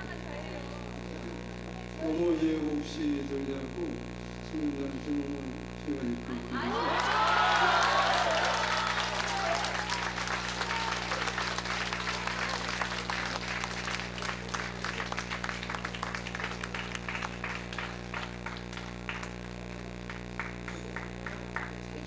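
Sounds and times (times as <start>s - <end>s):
low electrical hum: 0.0s - 22.0s
audience applauding: 6.6s - 22.0s.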